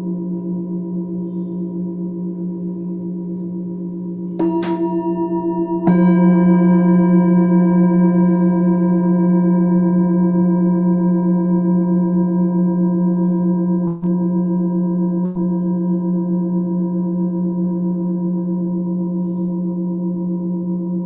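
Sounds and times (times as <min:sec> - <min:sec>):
layered ringing tones: 0:12.7 - 0:21.0.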